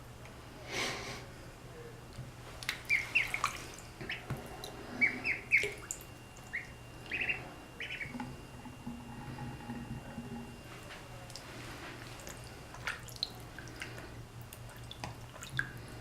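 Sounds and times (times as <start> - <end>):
water splashing and dripping: 2.6 - 8.1, 11.3 - 15.9
ducklings peeping: 2.6 - 8.4.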